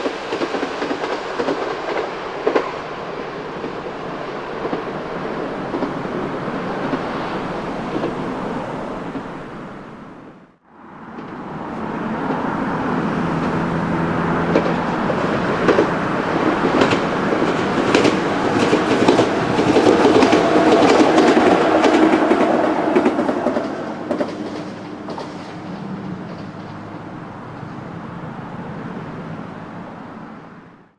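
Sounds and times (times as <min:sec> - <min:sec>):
electric train passing: 0:00.0 - 0:30.9
wheels clicking over rail joints: 0:03.6 - 0:09.8, 0:11.0 - 0:28.4.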